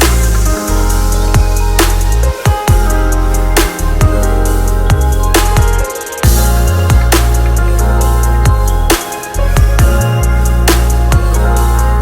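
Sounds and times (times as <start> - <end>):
electronic music with deep bass: 0.0 - 12.0.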